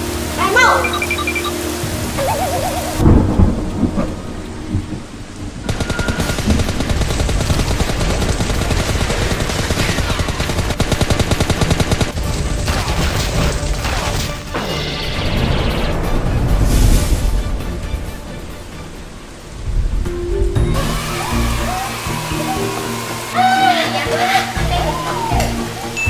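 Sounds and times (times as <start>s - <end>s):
heavy rain: 0.0s - 26.0s
thunderclap: 1.8s - 20.7s.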